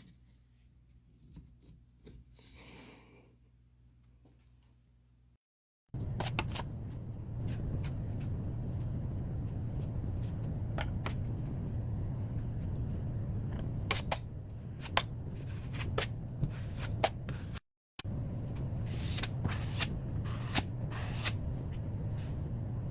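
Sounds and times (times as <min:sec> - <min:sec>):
steady low hum: 0:06.0 - 0:22.9.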